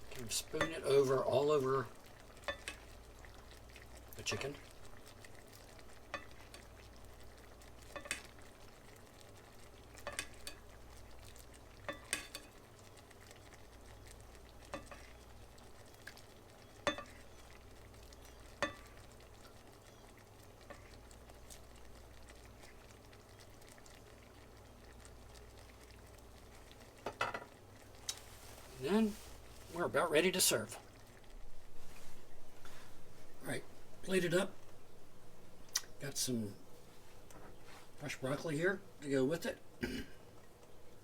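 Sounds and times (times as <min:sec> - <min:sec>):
faint sizzling in a pan: 0:00.0 - 0:41.0
spoon clicking against pan: 0:16.9 - 0:17.2.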